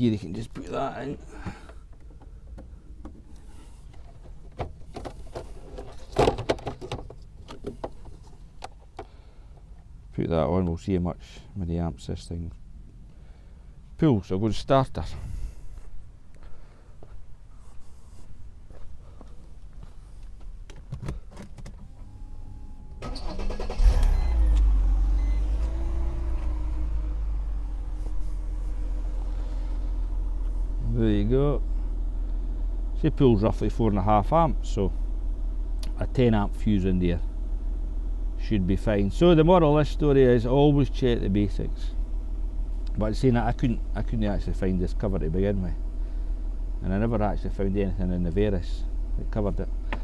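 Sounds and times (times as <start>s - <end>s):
car engine cranking: 21.1s - 31.0s
car engine idling: 21.9s - 50.0s.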